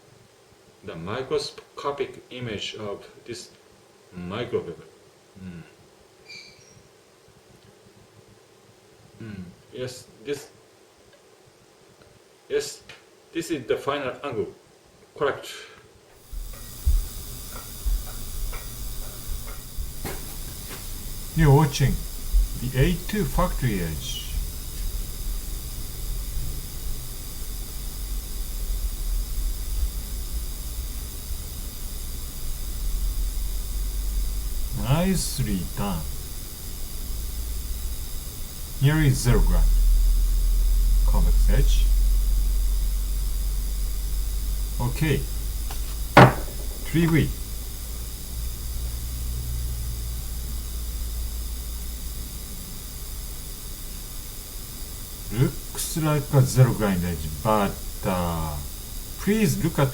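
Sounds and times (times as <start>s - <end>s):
low electrical hum: 0.0s - 59.9s
steady hiss: 15.2s - 59.9s.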